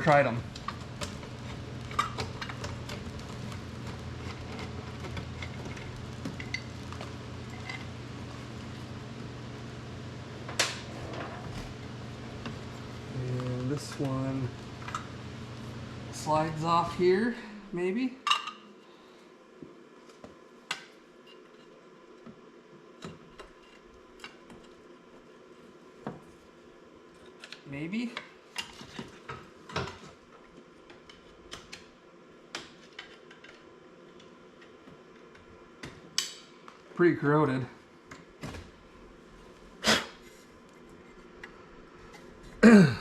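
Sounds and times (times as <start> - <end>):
low hum: 0.0 - 17.8.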